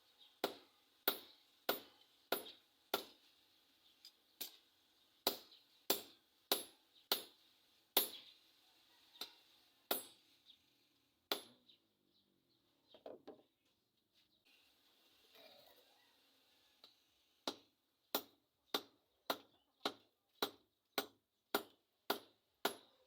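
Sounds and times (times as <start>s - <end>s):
hammer striking steel on anvil: 0.4s - 3.1s, 5.2s - 7.3s, 8.0s - 8.2s, 9.9s - 10.2s, 11.3s - 11.6s.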